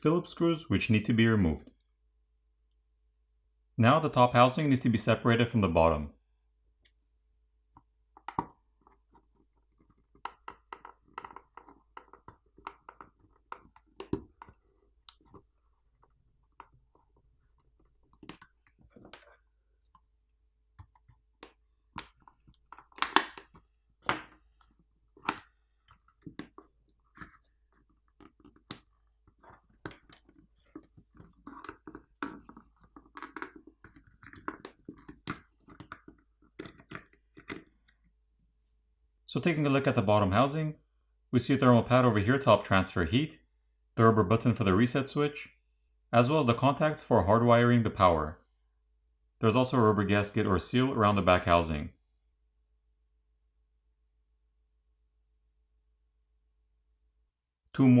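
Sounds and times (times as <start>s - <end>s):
small plastic clicks and rubbing: 7.7s - 38.2s
plastic catches snapping: 22.8s - 24.3s.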